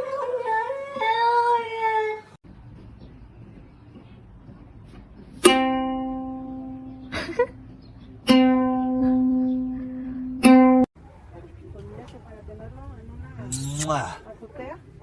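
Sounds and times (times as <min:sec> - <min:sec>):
plucked string instrument: 0:05.4 - 0:07.0, 0:08.2 - 0:10.9.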